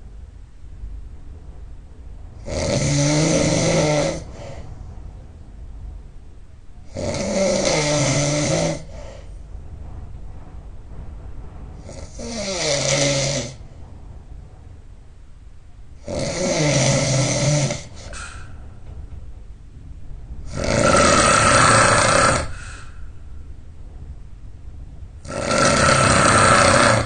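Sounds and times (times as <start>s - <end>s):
person snoring loudly: 2.4s - 4.6s, 6.9s - 9.2s, 11.9s - 13.6s, 16.0s - 18.5s, 20.5s - 22.9s, 25.2s - 27.0s.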